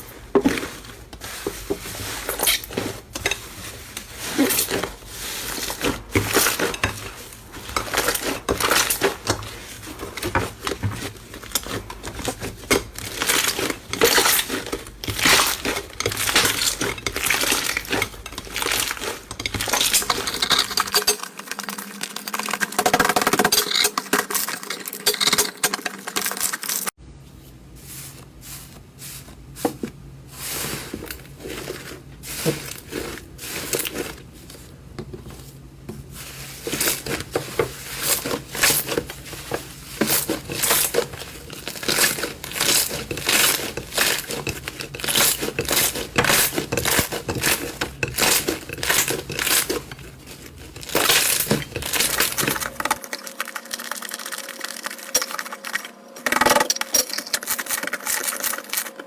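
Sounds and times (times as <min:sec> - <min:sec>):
slime popping and crackling: 0:50.7 - 0:58.9.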